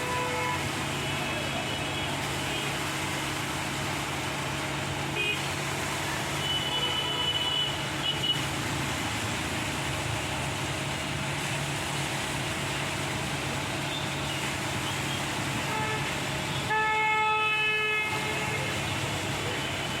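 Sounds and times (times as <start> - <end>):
vehicle horn: 0.0 - 0.6, 6.4 - 8.4, 15.7 - 16.1, 16.7 - 18.7
diesel engine running: 0.0 - 20.0.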